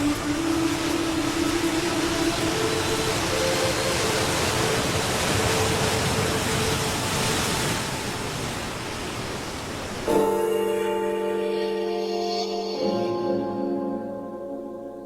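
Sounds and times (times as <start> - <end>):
ambient music chord: 0.0 - 5.0, 10.1 - 15.0
steady rushing noise: 0.0 - 11.8.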